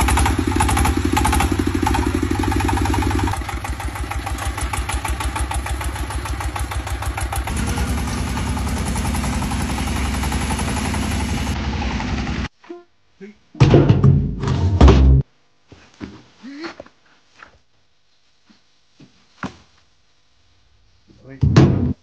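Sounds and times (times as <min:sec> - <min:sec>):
single-cylinder diesel engine running: 0:00.0 - 0:12.5.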